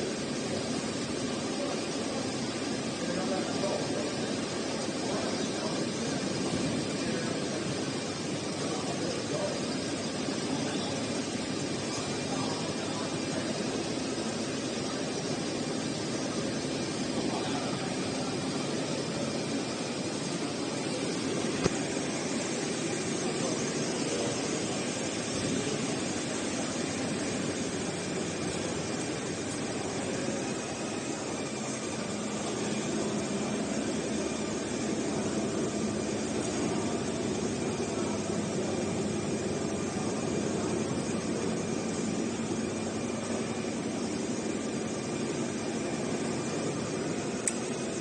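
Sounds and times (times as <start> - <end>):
industrial machinery hum: 0.0 - 48.0.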